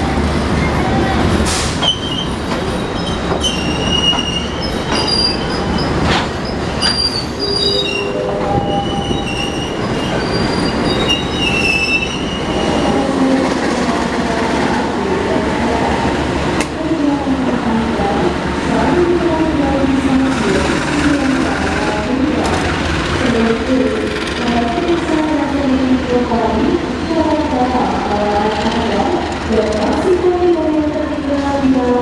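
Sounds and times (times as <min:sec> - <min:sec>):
train rumbling on rails: 0:00.0 - 0:32.0
train wheels squealing: 0:01.7 - 0:12.8.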